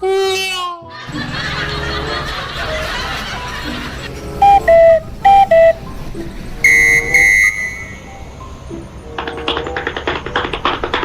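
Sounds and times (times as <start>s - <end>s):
musical bus horn: 4.4s - 5.8s, 6.6s - 8.3s.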